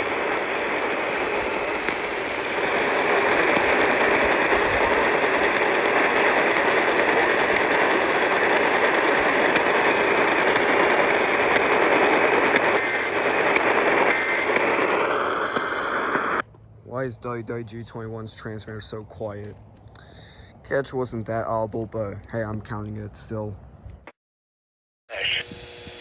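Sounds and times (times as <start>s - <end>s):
radio static hiss: 0.0s - 19.6s, 25.1s - 26.0s.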